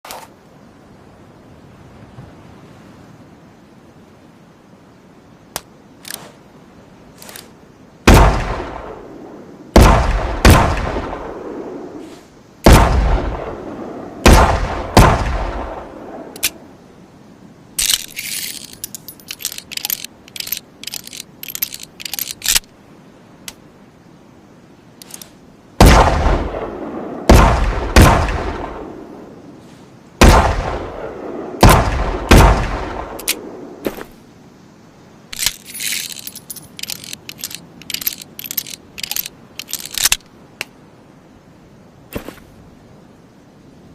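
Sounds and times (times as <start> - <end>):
light metallic clicks and rattles: 17.8 - 22.7, 35.3 - 40.7.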